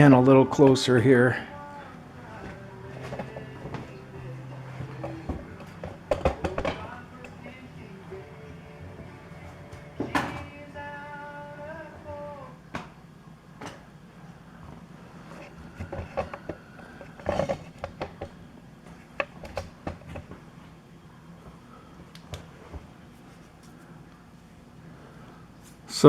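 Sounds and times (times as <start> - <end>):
held tone with overtones: 0.0 - 12.7
faint low hum: 0.0 - 26.0
clicks and knocks of handling tools: 2.4 - 6.8, 15.3 - 18.3, 19.0 - 20.4.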